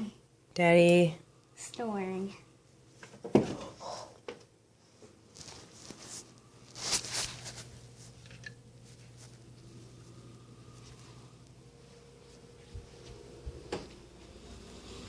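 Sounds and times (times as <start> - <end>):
steady low hum: 0.0 - 15.0
rustling handling noises: 5.0 - 9.8.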